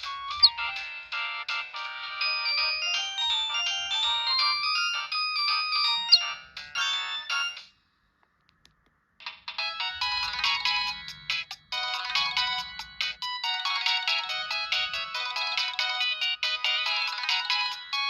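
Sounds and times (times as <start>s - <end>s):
polyphonic ringtone melody: 0.0s - 7.6s, 9.6s - 18.0s.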